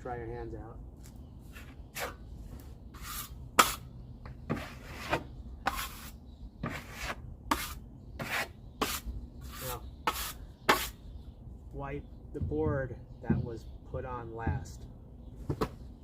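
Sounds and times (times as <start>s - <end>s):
taping knife scraping drywall compound: 3.0s - 3.8s, 4.5s - 11.0s.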